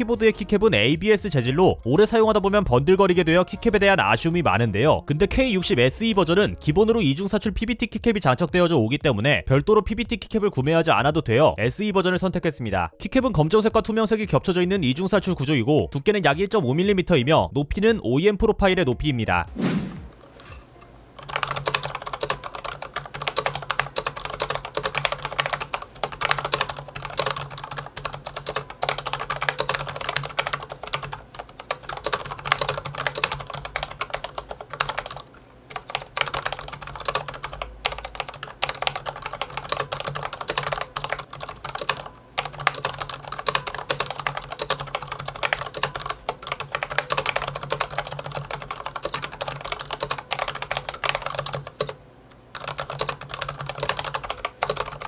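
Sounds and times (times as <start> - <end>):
mechanical keyboard typing: 21.2 - 55.0.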